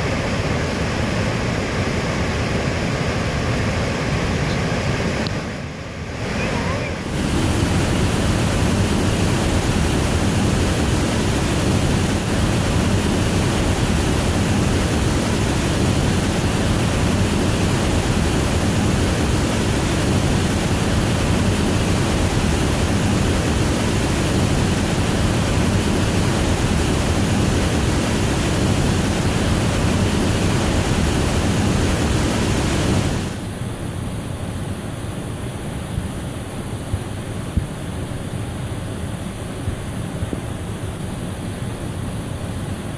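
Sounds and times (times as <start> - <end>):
waterfall rushing: 0.0 - 33.4.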